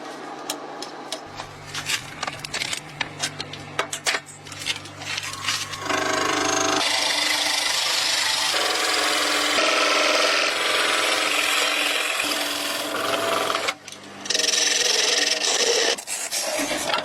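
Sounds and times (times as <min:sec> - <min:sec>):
faint hum: 0:00.4 - 0:09.4.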